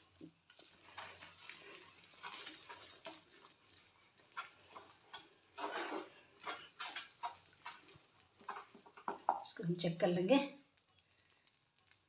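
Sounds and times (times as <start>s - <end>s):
utensil scraping and knocking: 4.3s - 9.4s.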